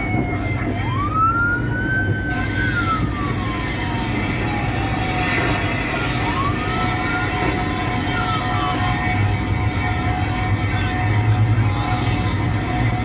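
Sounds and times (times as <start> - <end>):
wailing siren: 3.7 - 9.1.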